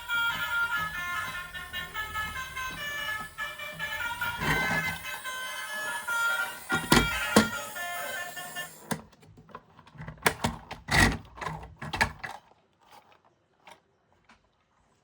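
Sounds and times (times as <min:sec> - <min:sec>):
background music: 0:00.0 - 0:08.8
plastic toys being handled: 0:08.8 - 0:15.0.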